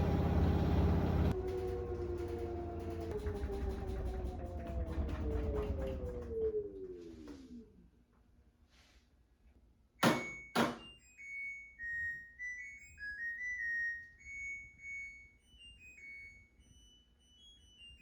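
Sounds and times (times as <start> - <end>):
washing machine chime melody: 10.0 - 18.0.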